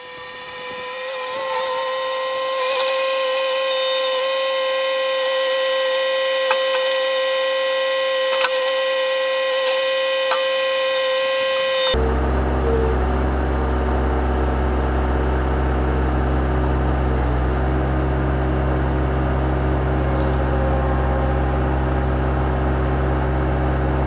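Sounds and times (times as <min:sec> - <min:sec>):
saw blade whining through log: 0:00.0 - 0:12.0.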